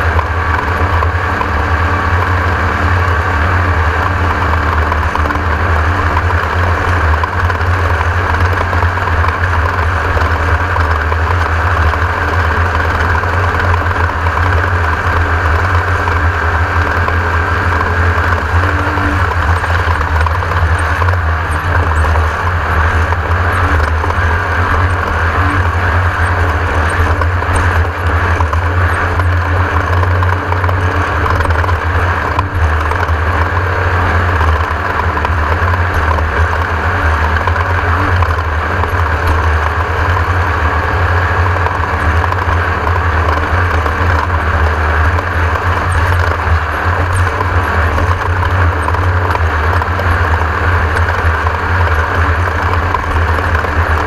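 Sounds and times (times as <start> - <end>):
buggy engine running under load: 0.0 - 54.0.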